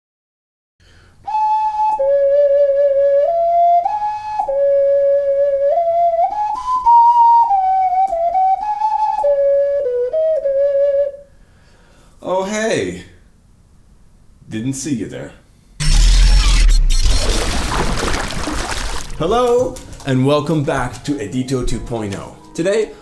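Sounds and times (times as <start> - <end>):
ocarina playing slow melody: 1.2 - 11.2.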